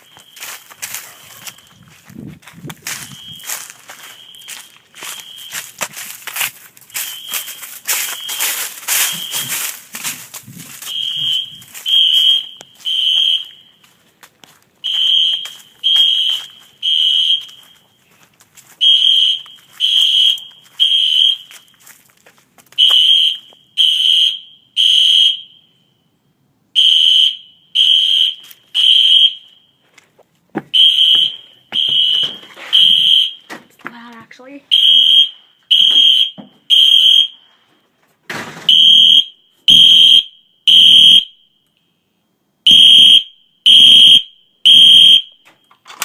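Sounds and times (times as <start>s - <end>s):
smoke alarm beeping: 0.0s - 1.8s, 2.9s - 5.8s, 6.9s - 9.8s, 10.8s - 13.9s, 14.8s - 18.1s, 18.8s - 21.8s, 22.8s - 25.8s, 26.8s - 29.8s, 30.8s - 33.5s, 34.7s - 37.4s, 38.7s - 41.4s, 42.7s - 45.4s
scuffling noise: 0.0s - 23.6s, 28.4s - 34.4s.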